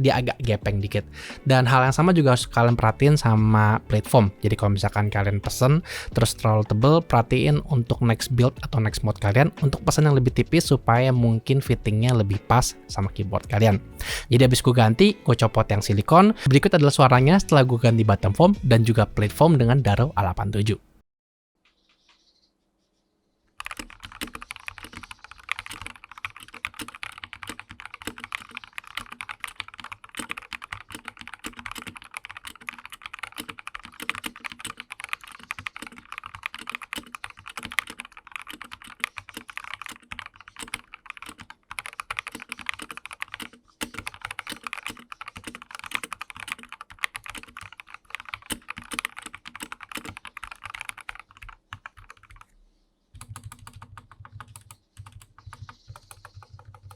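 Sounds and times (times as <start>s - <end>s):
mechanical keyboard typing: 1.9s - 13.4s, 23.6s - 52.5s, 53.2s - 56.9s.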